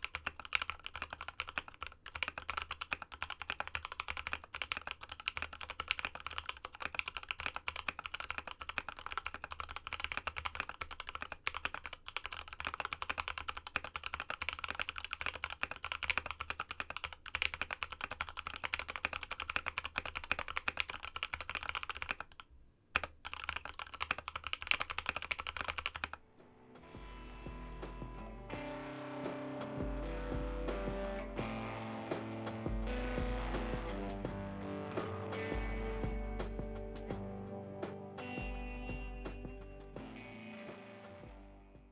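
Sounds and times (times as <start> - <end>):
fast mechanical keyboard typing: 0.0 - 26.2.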